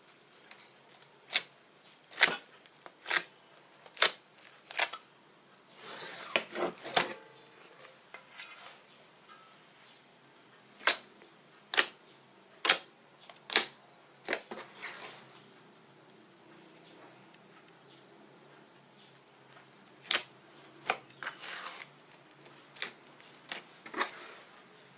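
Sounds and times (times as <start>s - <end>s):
soft rustle: 5.7s - 10.0s, 14.5s - 15.7s, 21.2s - 22.0s, 23.3s - 24.9s.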